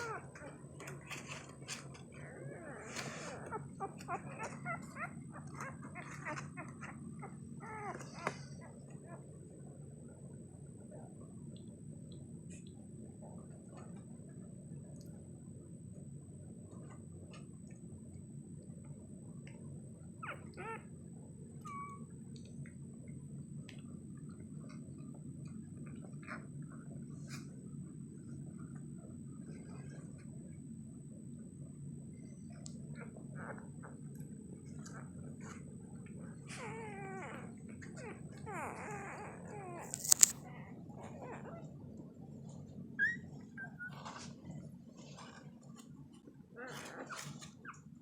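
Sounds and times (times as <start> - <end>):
puppies squeaking and whimpering: 0.0 - 9.2, 20.2 - 20.9, 21.6 - 22.1, 36.4 - 41.6, 43.0 - 44.4
puppy squeak: 43.0 - 44.1.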